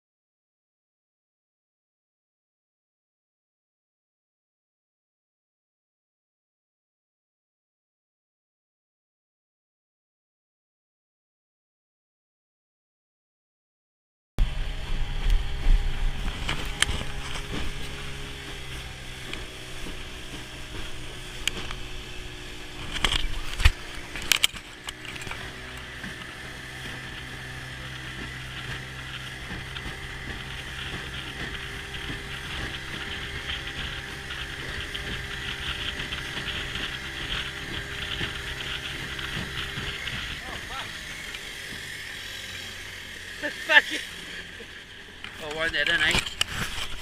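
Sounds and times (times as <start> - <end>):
boat motor running: 14.4 - 47.0
sea noise: 14.4 - 47.0.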